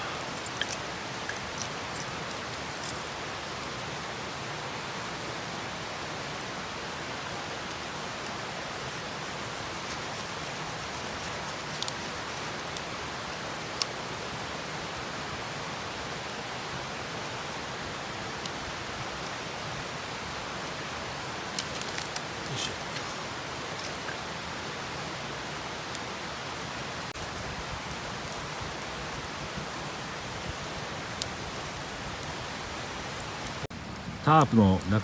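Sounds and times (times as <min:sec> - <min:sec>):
wood fire crackling and popping: 0:08.8 - 0:12.9, 0:21.4 - 0:24.9, 0:27.2 - 0:35.0.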